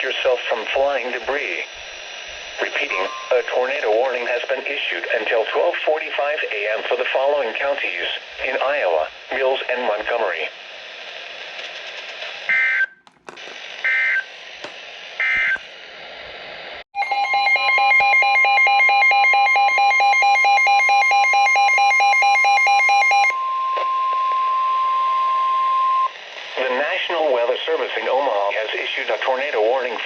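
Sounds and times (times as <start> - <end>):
radio hiss: 0.0 - 16.8, 26.1 - 30.0
steady warning alarm tone: 0.3 - 4.7, 15.2 - 15.6, 17.0 - 26.1
rapid pulsing electronic alarm beep: 1.5 - 4.4, 17.0 - 26.1
digital data tone bursts: 2.6 - 3.6.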